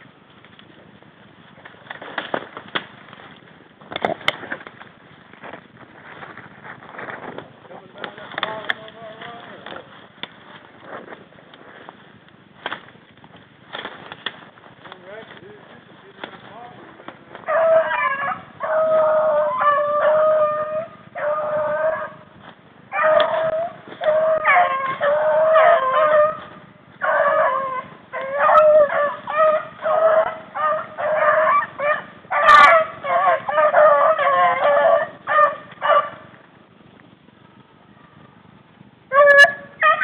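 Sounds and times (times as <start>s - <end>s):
sharp crack: 1.4s - 17.6s
hounds baying: 13.8s - 36.6s, 37.6s - 40.0s.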